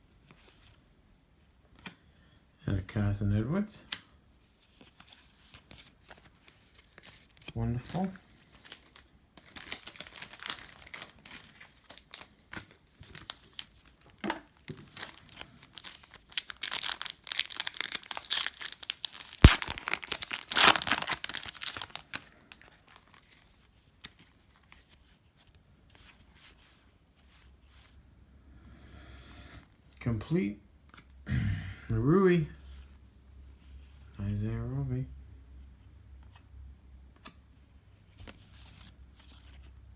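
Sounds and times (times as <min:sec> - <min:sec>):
plastic wrapper tearing and crinkling: 0:06.1 - 0:24.8.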